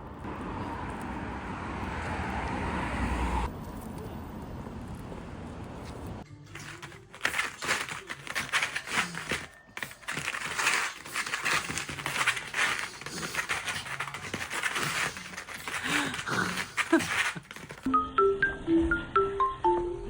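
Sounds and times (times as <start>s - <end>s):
dog panting: 5.7s - 17.9s.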